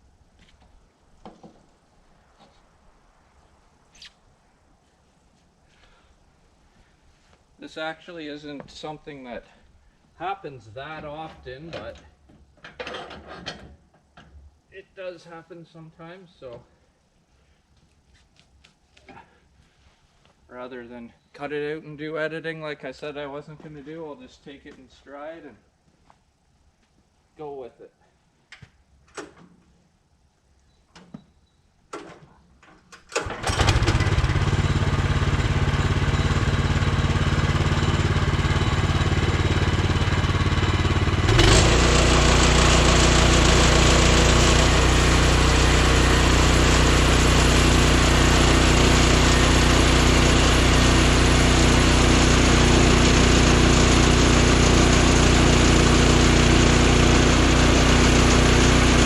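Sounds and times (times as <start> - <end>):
gasoline engine running: 33.2 - 59.0.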